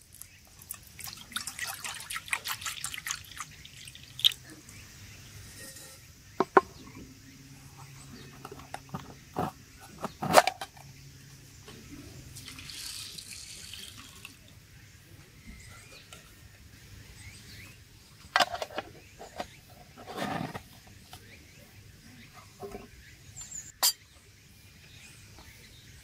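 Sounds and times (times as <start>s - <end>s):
rustling scrape: 18.5s - 20.9s.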